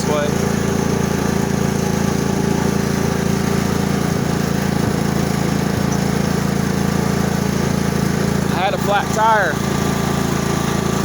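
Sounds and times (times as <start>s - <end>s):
riding lawn mower engine: 0.0s - 11.0s.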